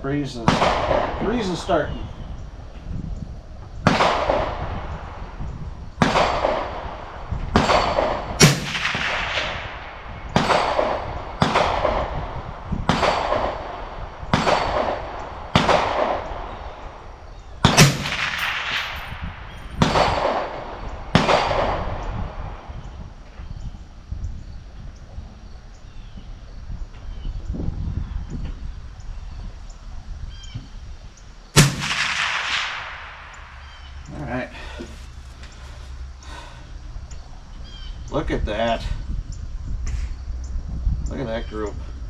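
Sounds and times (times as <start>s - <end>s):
rifle shots with ringing echo: 0.4s - 1.6s, 3.8s - 5.2s, 6.0s - 22.8s, 31.6s - 34.0s.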